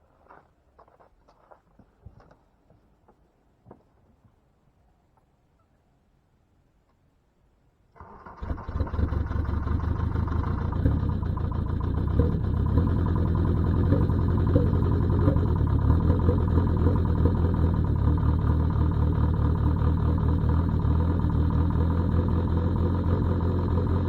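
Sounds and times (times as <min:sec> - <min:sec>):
diesel engine starting and idling: 0:08.0 - 0:24.0.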